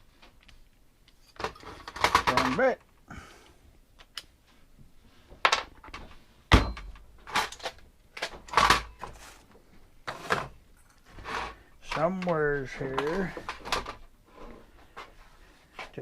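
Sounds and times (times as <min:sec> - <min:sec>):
objects knocking and scraping: 0:01.1 - 0:02.8, 0:05.2 - 0:16.0.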